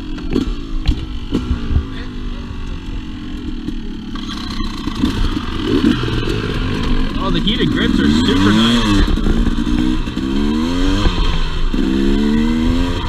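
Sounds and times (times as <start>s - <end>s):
two-stroke dirt bike engine: 0.0s - 13.0s.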